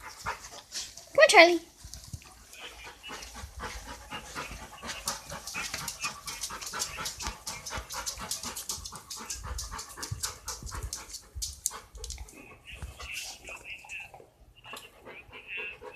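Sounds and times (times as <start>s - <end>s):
dog panting: 0.0s - 15.9s.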